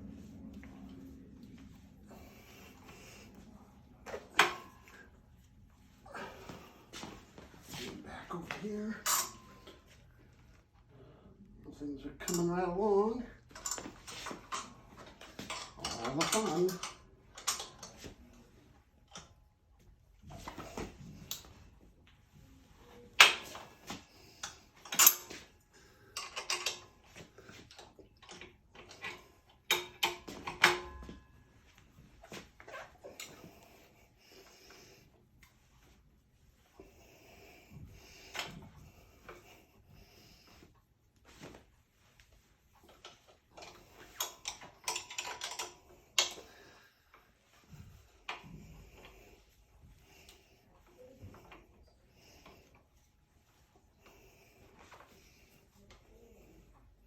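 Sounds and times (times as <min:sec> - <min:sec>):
metal tools clicking and knocking: 0:09.0 - 0:09.5, 0:13.5 - 0:18.0, 0:24.4 - 0:25.4, 0:26.2 - 0:26.8, 0:28.2 - 0:31.1, 0:43.6 - 0:46.4.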